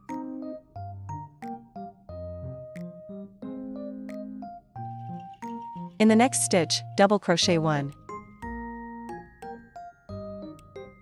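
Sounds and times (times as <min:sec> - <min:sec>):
bell-like melody: 0:07.6 - 0:11.0.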